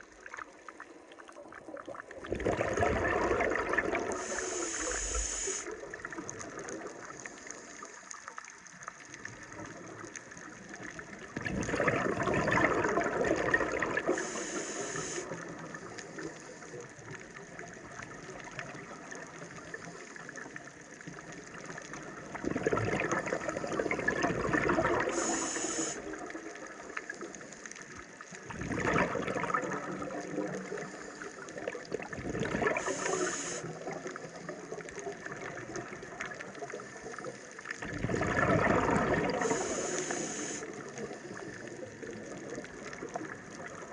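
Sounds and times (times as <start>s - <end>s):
exhaled bubbles underwater: 0.0s - 43.9s
regulator inhale hiss: 4.1s - 5.8s, 7.2s - 8.3s, 14.1s - 17.0s, 25.0s - 26.2s, 30.7s - 31.7s, 32.7s - 34.6s, 39.2s - 41.8s.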